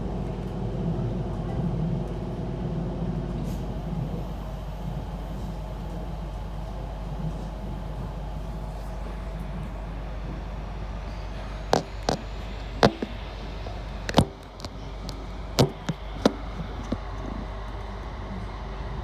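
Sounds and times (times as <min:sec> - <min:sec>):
train rumbling inside carriage: 0:00.0 - 0:19.0
sharp clicks and knocks: 0:11.7 - 0:17.4.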